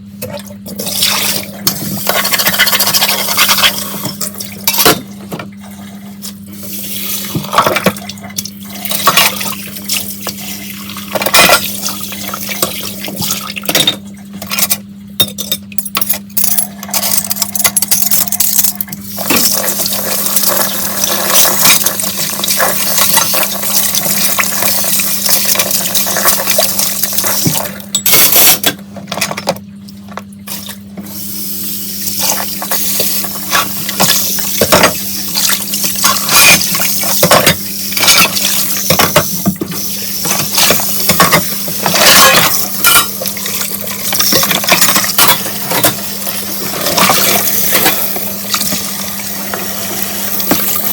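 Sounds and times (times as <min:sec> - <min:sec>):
tap water running into sink: 0:32.0 - 0:50.9.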